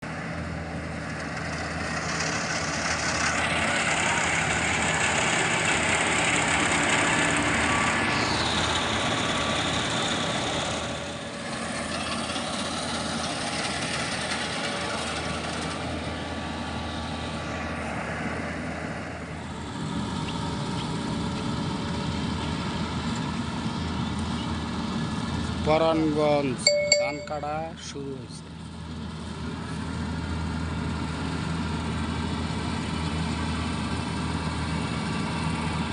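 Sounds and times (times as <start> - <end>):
engine hum: 0.0 - 26.6.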